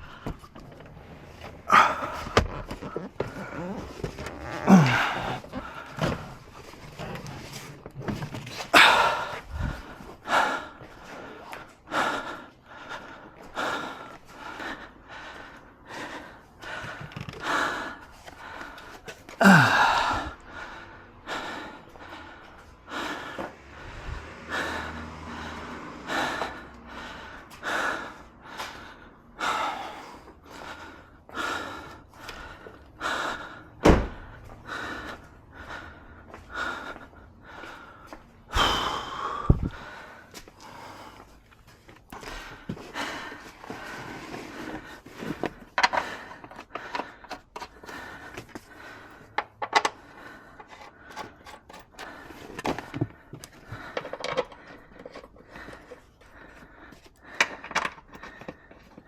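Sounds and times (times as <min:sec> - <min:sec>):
person breathing hard: 0:00.0 - 0:07.7, 0:08.5 - 0:59.0
dull thunks: 0:33.8 - 0:34.3.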